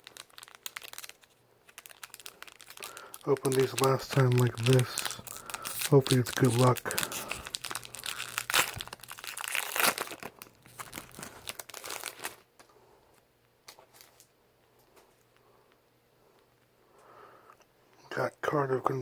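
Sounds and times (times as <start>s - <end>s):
wrapper tearing and crinkling: 0.0s - 12.5s.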